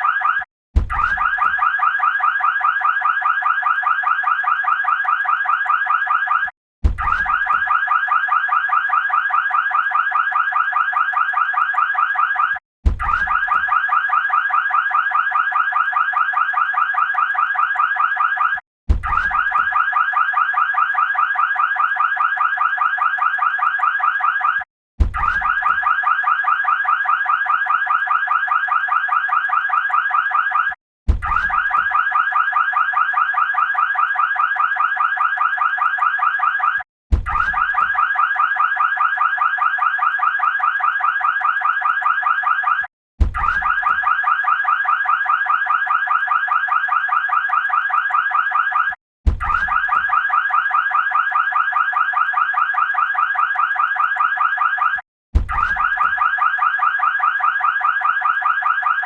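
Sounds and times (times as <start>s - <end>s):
warbling siren: 0.0s - 59.0s.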